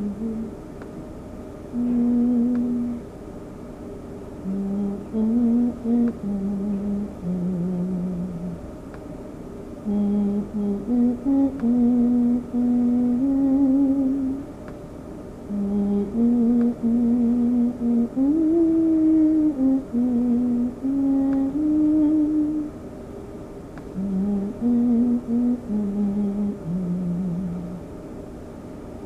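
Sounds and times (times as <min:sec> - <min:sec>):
person humming a slow melody: 0:00.0 - 0:00.6, 0:01.7 - 0:03.1, 0:04.4 - 0:08.6, 0:09.8 - 0:14.5, 0:15.4 - 0:22.8, 0:23.9 - 0:27.9.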